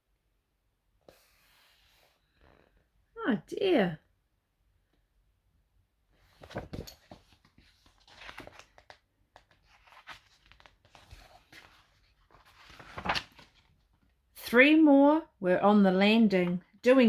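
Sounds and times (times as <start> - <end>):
paper rustling and crinkling: 6.2 - 14.0.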